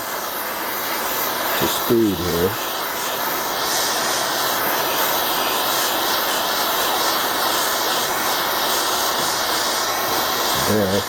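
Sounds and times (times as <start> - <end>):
gas torch hissing: 0.0 - 11.0.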